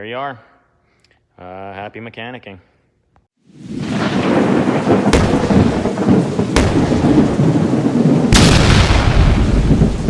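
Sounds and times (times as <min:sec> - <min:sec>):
rumbling thunder: 0:03.6 - 0:10.0
sharp thunder cracks: 0:03.6 - 0:10.0.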